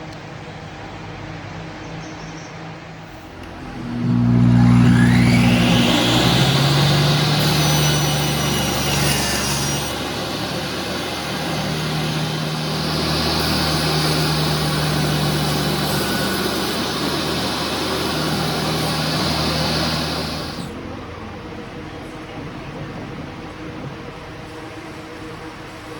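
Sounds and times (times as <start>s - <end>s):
power tool motor running: 3.3s - 20.8s.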